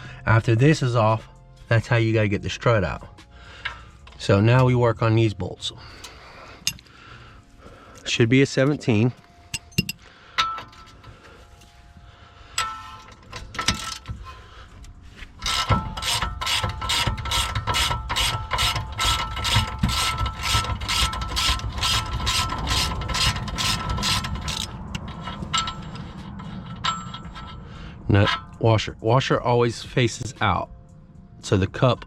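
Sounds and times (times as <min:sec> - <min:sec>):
ratchet wrench clicking: 0:12.6 - 0:14.2, 0:15.4 - 0:26.1.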